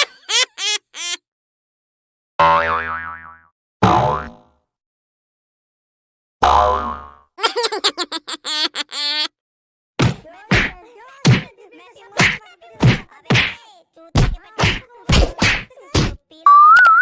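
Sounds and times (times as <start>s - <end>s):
sharp slapping whacks: 10.0s - 11.5s, 12.2s - 13.6s, 14.2s - 16.2s.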